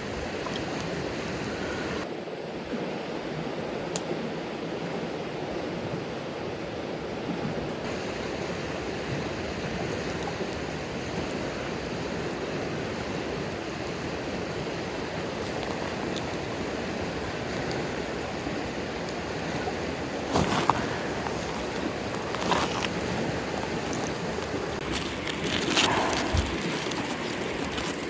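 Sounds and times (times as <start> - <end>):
campfire crackling: 0.0 - 2.0, 7.7 - 28.0
stream water rushing: 0.0 - 2.2, 7.8 - 28.0.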